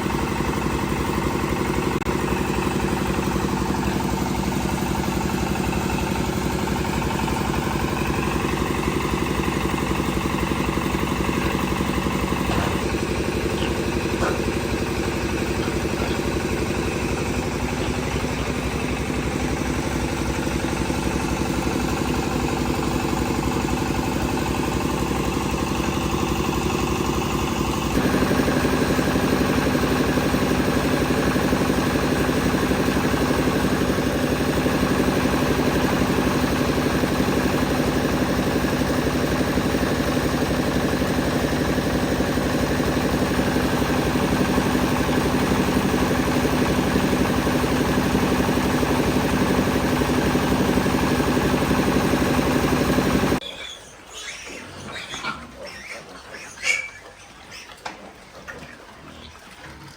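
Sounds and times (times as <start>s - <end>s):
engine running: 0.0s - 53.4s.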